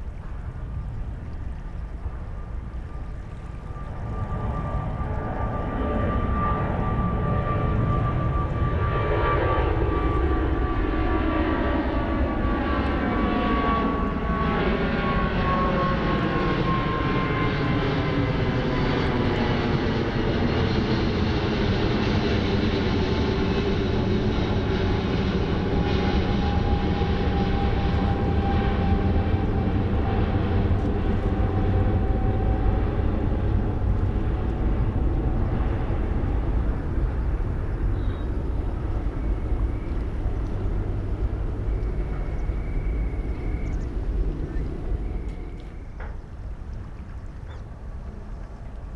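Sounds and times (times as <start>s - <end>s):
jet engines rumbling: 0.0s - 48.9s
high jet whine: 2.7s - 46.6s.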